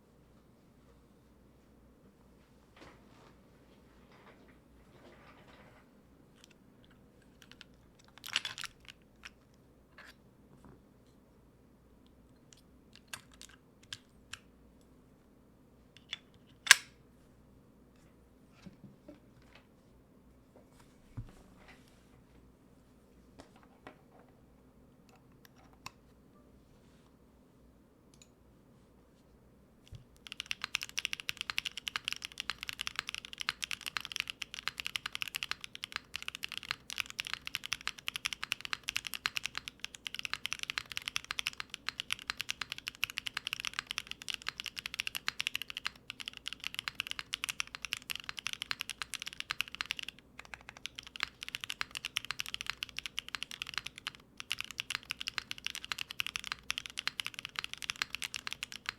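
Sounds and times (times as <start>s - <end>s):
mechanical keyboard typing: 7.4s - 9.4s, 30.2s - 58.9s.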